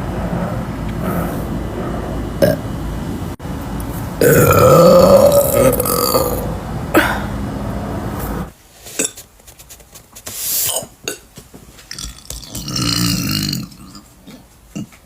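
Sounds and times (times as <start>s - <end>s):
woman burping: 4.2s - 7.3s, 12.2s - 14.1s.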